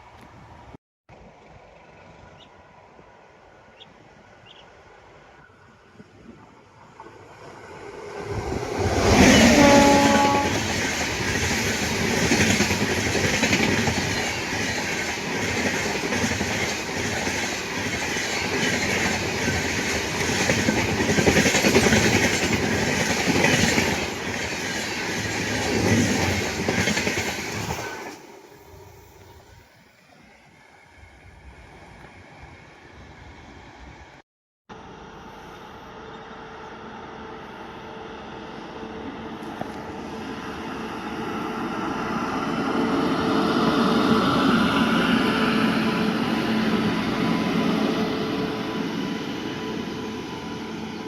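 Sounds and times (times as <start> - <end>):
train wheels rattling on track: 6.8 - 32.2
train horn: 9.0 - 10.8.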